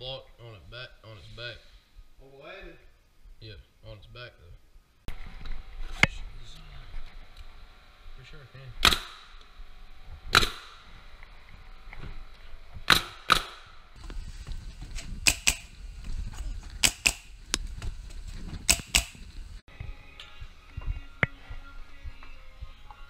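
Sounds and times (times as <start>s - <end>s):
nails driven into wood: 8.8s - 9.4s, 10.3s - 10.8s, 12.8s - 13.8s, 15.0s - 15.7s, 16.8s - 17.3s, 18.6s - 19.2s.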